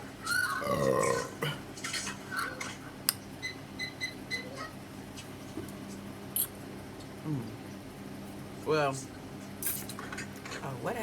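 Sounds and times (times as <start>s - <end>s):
deep burp: 0.6s - 1.7s.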